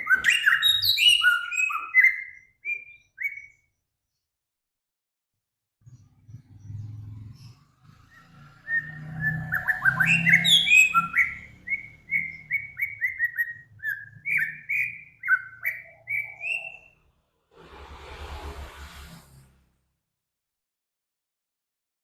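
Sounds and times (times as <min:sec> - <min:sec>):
songbird singing whistled notes: 0:00.0 - 0:03.8, 0:08.1 - 0:17.0.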